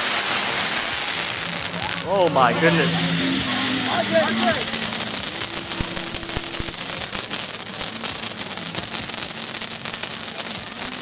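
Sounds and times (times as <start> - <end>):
fireworks crackling and hissing: 0.0 - 11.0
heavier firework pops: 3.5 - 11.0.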